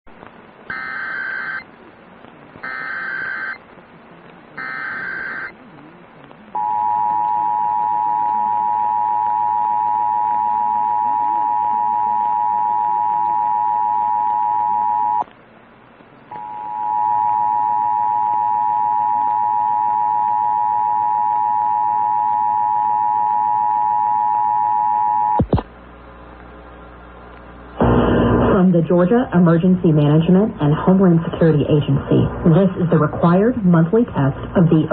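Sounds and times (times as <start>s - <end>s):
digital data bursts: 0.7s - 1.7s, 2.6s - 3.6s, 4.6s - 5.6s
two-tone attention signal: 6.6s - 15.2s.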